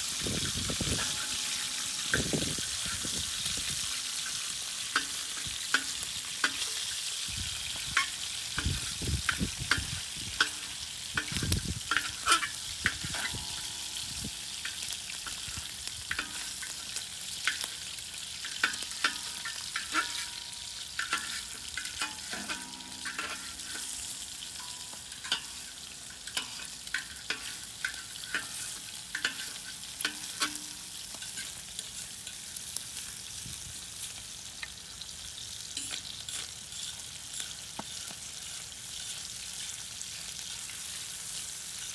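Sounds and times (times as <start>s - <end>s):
bacon sizzling in a pan: 0.0s - 41.9s
stirring clicks and scrapes: 7.9s - 14.0s, 14.6s - 17.8s, 18.4s - 32.9s, 35.8s - 39.8s.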